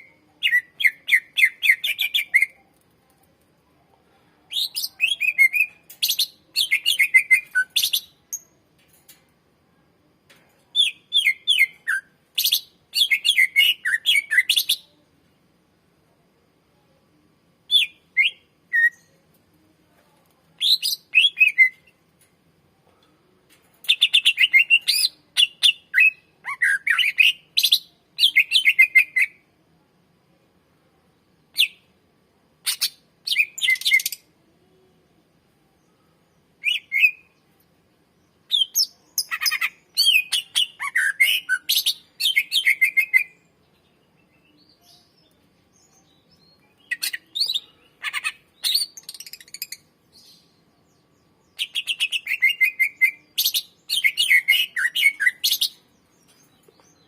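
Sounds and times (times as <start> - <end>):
bird singing trills: 38.5 - 57.0.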